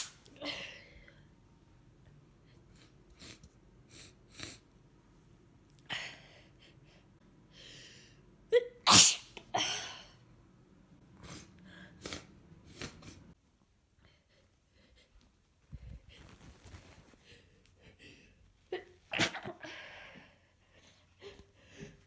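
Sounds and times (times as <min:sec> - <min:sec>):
woman sneezing: 0:08.8 - 0:09.9.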